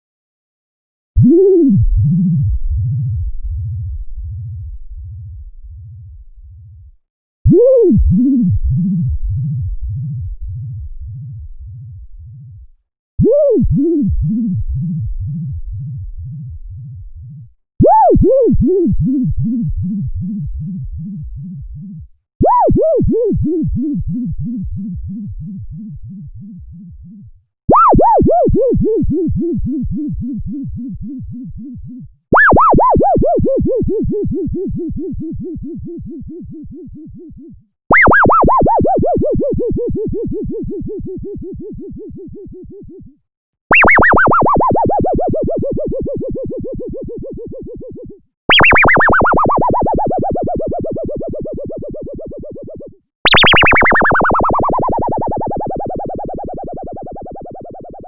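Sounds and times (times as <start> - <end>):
cartoon boing sound effect: 53.3 - 54.4.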